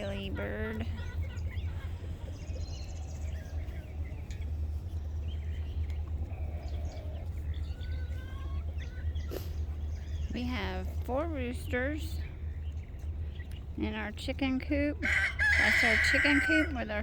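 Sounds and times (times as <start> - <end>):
steady low rumble: 0.0 - 17.0
faint bird chirps: 0.9 - 10.4.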